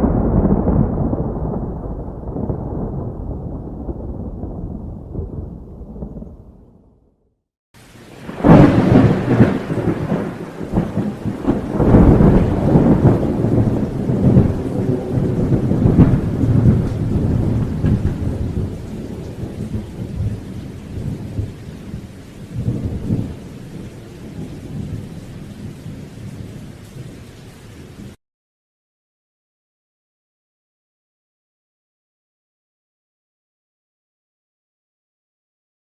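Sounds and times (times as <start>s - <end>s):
steady rain: 0.0s - 6.4s, 7.8s - 28.2s
loud thunderclap: 0.0s - 6.9s, 8.2s - 26.1s
thunder rumbling: 0.0s - 7.1s, 8.0s - 27.2s.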